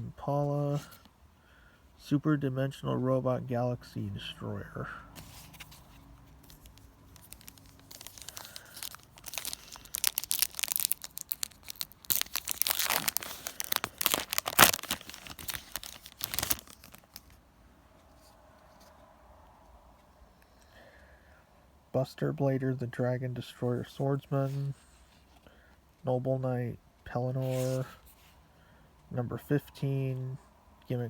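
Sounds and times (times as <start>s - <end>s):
foil wrapper tearing and crinkling: 6.4s - 17.4s.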